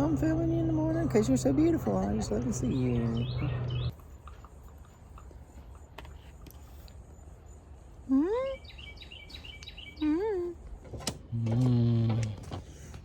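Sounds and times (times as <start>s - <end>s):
birds calling: 0.0s - 7.9s, 8.5s - 10.8s.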